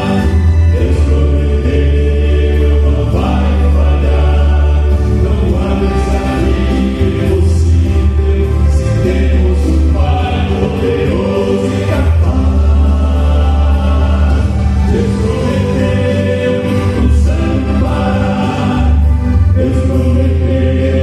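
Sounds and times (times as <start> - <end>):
musical accompaniment: 0.0 - 21.0
vocal quartet singing a hymn: 0.0 - 21.0.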